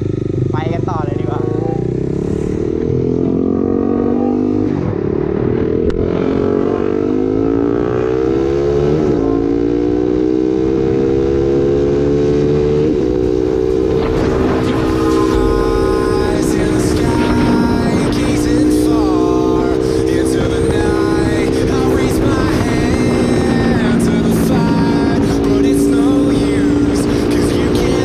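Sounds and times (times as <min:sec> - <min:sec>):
motorcycle engine accelerating: 0:00.0 - 0:28.0
wind noise on microphone: 0:19.6 - 0:27.9.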